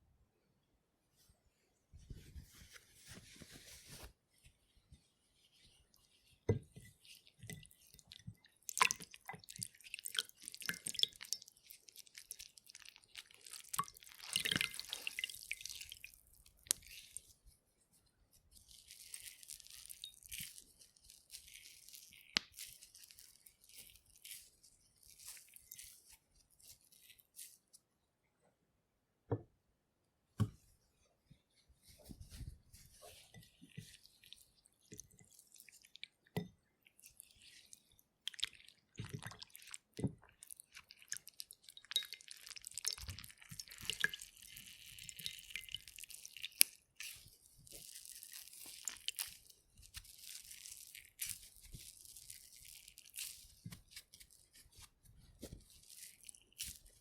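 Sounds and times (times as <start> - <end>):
water trickling and dripping: 7.2 - 16.9, 36.8 - 46.9
wet fabric squelching: 18.3 - 27.8, 31.5 - 57.0.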